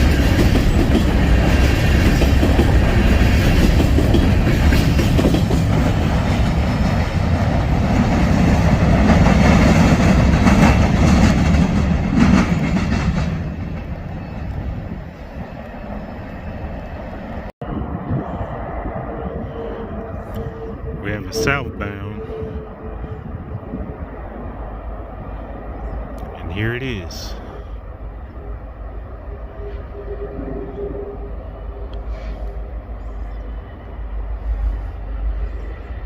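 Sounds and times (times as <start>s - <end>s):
wheels clacking over rails: 0.0s - 14.6s
freight train rumbling past: 0.0s - 36.0s.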